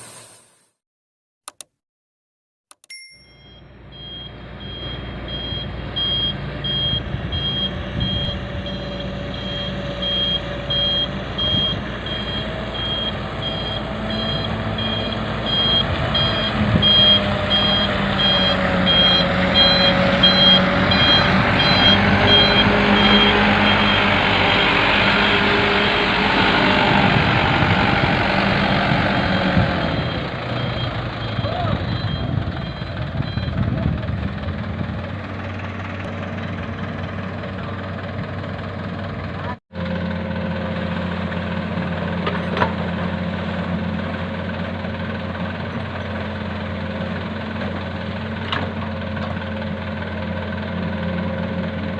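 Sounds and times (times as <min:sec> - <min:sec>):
reversing alarm beeping: 0:03.2 - 0:26.2, 0:29.1 - 0:33.6
diesel engines running: 0:03.3 - 0:51.9.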